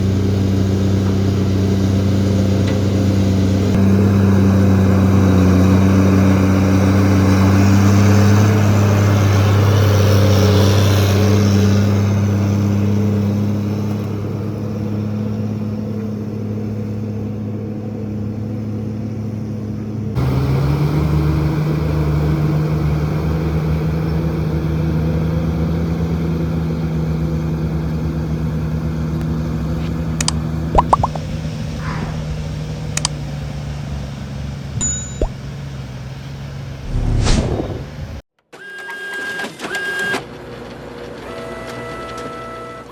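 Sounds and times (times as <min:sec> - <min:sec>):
higher engine hum: 0:28.4 - 0:38.2
rush of noise: 0:36.8 - 0:38.2.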